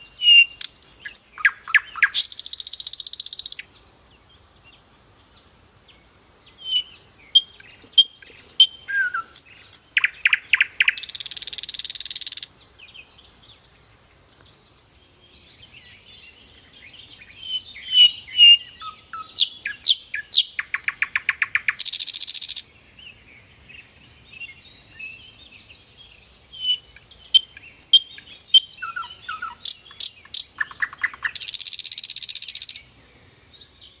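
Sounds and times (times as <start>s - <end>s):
songbird singing: 0.0s - 34.0s.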